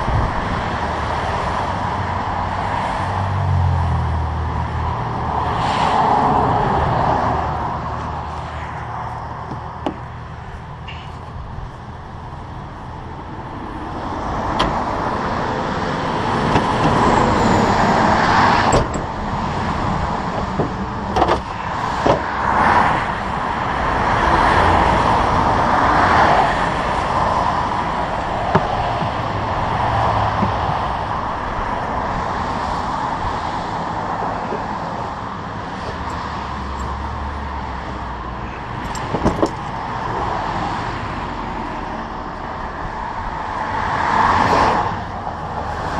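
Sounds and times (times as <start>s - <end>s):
highway traffic rushing: 0.0s - 45.9s
sharp knocks: 28.5s - 29.3s.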